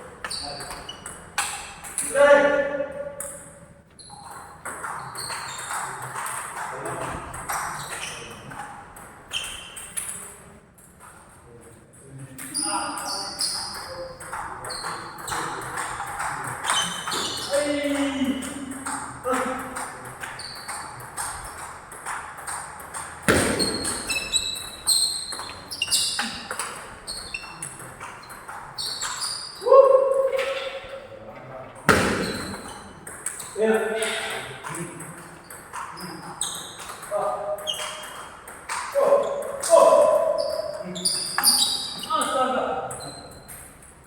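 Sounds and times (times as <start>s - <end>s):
table tennis ball hits: 4.2s - 10.2s, 12.5s - 30.8s, 31.8s - 43.9s
table tennis ball clicks: 31.9s - 39.6s.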